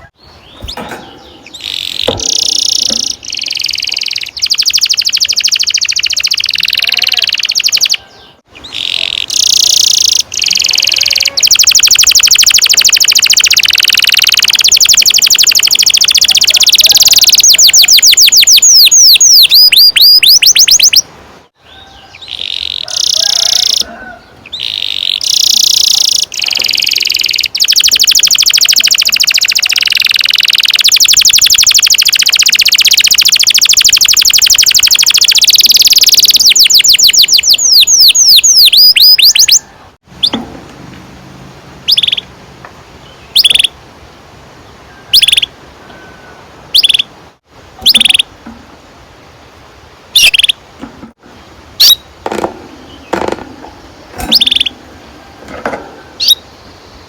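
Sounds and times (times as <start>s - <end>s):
canary singing trills: 0.0s - 40.5s, 41.4s - 42.4s, 43.0s - 43.8s, 44.8s - 46.1s, 46.7s - 47.2s, 47.8s - 48.4s, 50.1s - 50.6s, 51.7s - 57.0s.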